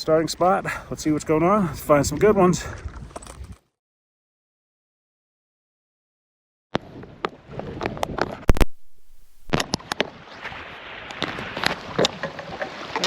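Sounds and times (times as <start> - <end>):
microphone knocks and clicks: 7.8 - 9.8
microphone rubbing and rustling: 7.8 - 9.8.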